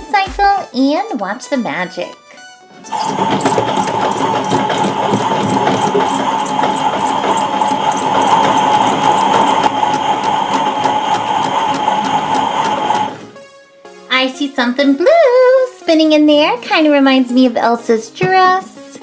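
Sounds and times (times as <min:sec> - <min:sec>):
small electric motor whirring: 0:02.9 - 0:13.3.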